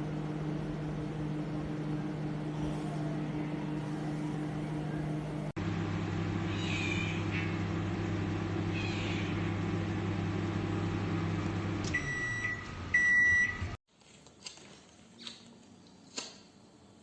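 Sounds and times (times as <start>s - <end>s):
microwave oven humming: 0.0s - 13.8s
microwave beeps: 11.9s - 13.8s.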